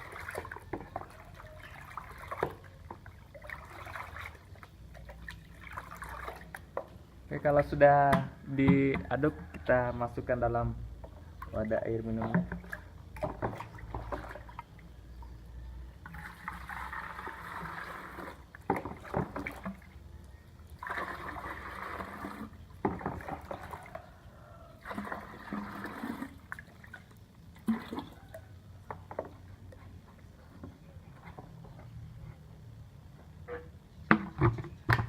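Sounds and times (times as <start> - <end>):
liquid pouring into container: 0.0 - 6.9, 16.0 - 20.0, 20.6 - 24.1, 24.8 - 28.4
containers knocking and clunking: 0.3 - 1.2, 6.3 - 14.6, 18.6 - 19.9, 20.9 - 23.8, 28.8 - 29.5, 33.4 - 35.0.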